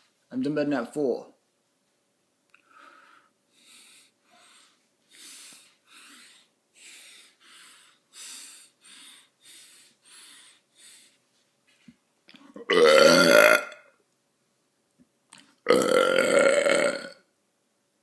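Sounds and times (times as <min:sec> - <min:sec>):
person breathing noisily: 0:02.6 - 0:11.2
person burping: 0:12.5 - 0:13.9, 0:15.6 - 0:17.3.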